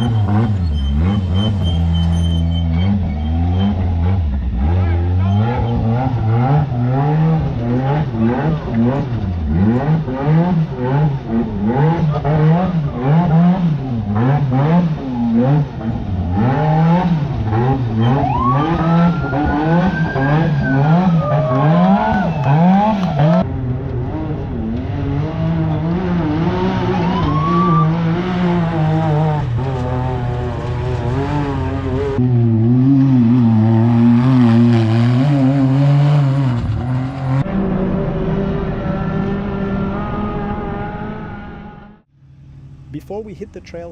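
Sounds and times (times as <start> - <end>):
engines revving in bursts: 0.0 - 23.5, 24.1 - 42.1.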